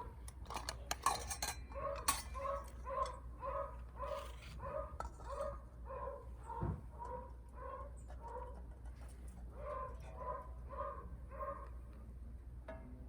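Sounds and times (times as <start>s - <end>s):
utensil clinking against dish: 0.4s - 3.2s.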